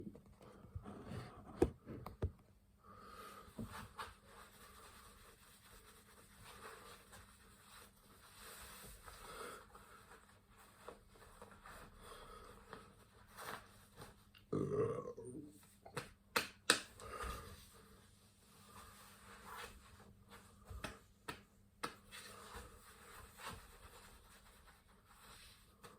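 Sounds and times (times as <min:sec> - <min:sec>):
rustling and scraping: 0:00.0 - 0:02.3, 0:22.0 - 0:25.9.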